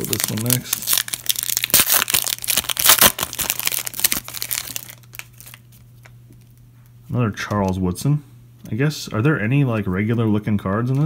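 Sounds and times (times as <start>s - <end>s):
plastic wrapper tearing and crinkling: 0.0s - 6.6s.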